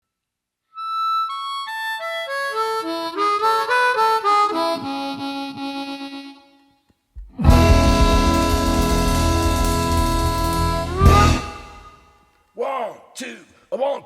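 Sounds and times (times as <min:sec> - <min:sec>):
blues harmonica: 0:00.8 - 0:06.8, 0:07.4 - 0:12.0.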